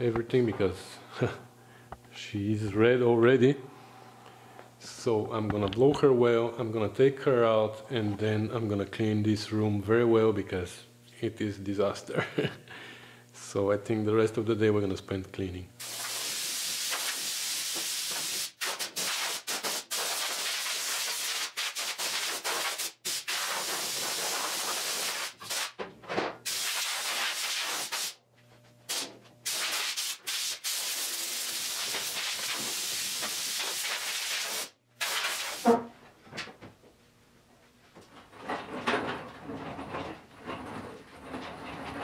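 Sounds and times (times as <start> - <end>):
air blow gun hissing: 15.8 - 25.8, 26.5 - 28.2, 28.9 - 35.8.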